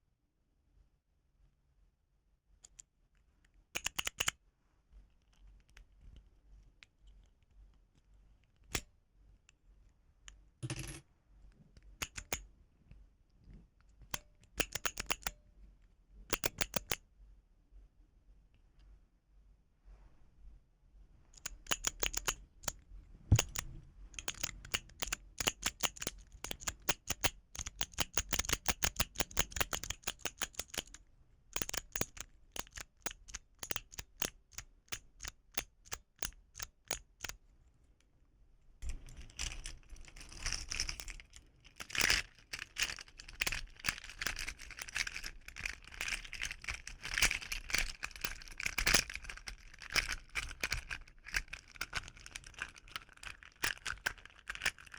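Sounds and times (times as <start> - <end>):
fidget toy keys clicking: 3.8 - 4.4, 12.0 - 12.4, 14.1 - 15.4, 16.3 - 17.0, 21.3 - 37.4, 39.2 - 54.9.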